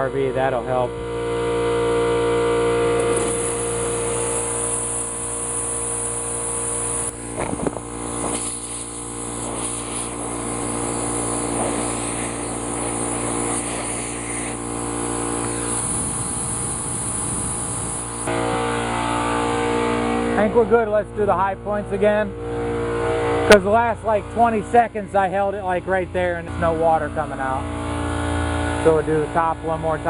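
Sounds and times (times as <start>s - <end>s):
motor hum: 0.0s - 30.0s
compressed air hissing: 3.0s - 18.3s.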